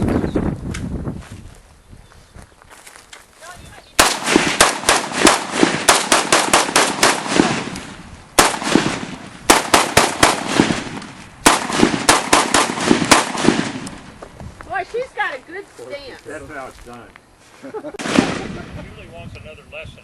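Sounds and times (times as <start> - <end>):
rifle fired rapidly: 4.0 - 7.8, 8.4 - 13.8, 18.0 - 18.5.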